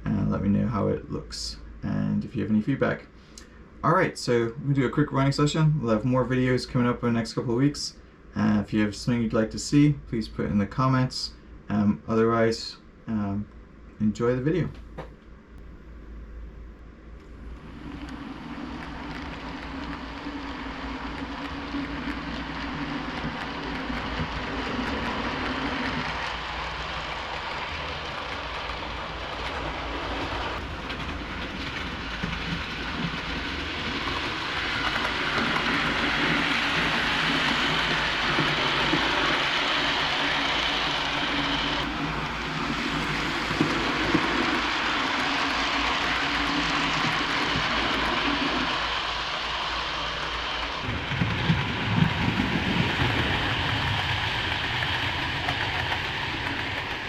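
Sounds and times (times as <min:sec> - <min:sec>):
model train hum and rattle: 0:16.4 - 0:57.0.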